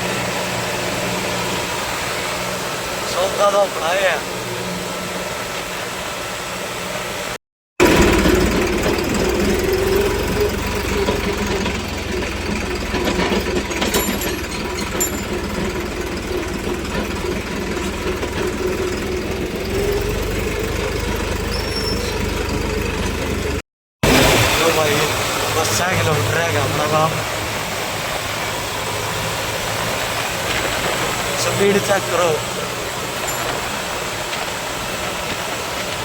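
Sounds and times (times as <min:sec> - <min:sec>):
tractor diesel engine clattering: 0:07.8 - 0:36.0.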